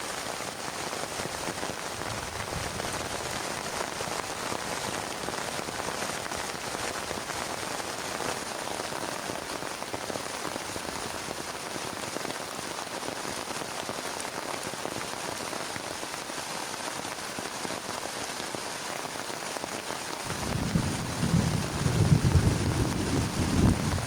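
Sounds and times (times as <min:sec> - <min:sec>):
heavy rain on plastic tarp: 0:00.0 - 0:24.0
low rumble: 0:20.3 - 0:24.0.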